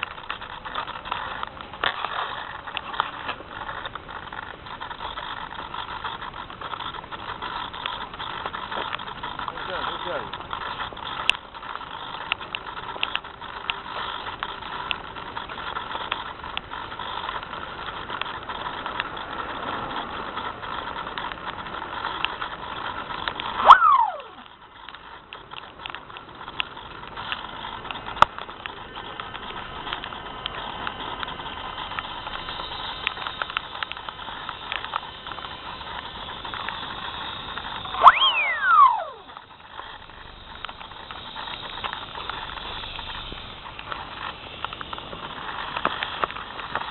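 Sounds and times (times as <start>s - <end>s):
electric motor running: 37.8s - 39.4s.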